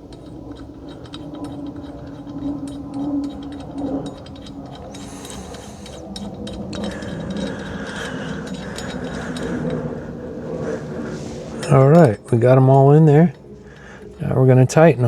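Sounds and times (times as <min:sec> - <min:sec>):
allen key clicking and scraping: 0:00.0 - 0:15.0
low steady hum: 0:00.0 - 0:15.0.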